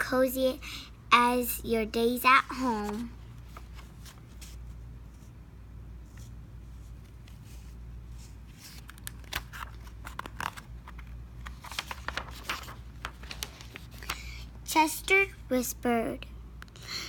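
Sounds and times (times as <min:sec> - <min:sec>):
paper pages rustling and turning: 0:02.4 - 0:05.3, 0:06.0 - 0:14.5.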